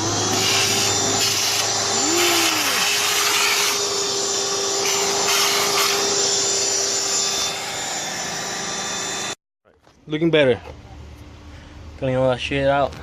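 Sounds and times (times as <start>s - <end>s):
vacuum cleaner running: 0.0s - 9.4s.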